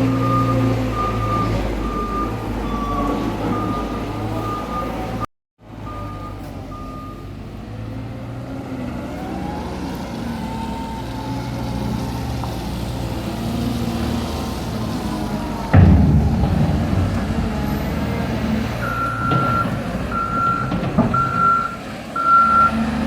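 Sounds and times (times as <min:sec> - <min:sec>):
heavy vehicle engine running: 0:00.0 - 0:23.0
reversing alarm beeps: 0:00.1 - 0:05.2, 0:05.8 - 0:07.4, 0:18.8 - 0:22.8.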